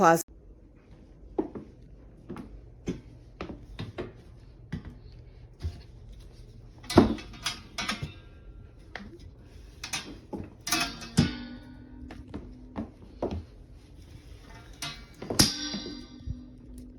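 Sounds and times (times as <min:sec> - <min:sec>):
objects knocking and clattering: 0:06.8 - 0:08.3, 0:09.0 - 0:13.5, 0:14.1 - 0:16.9.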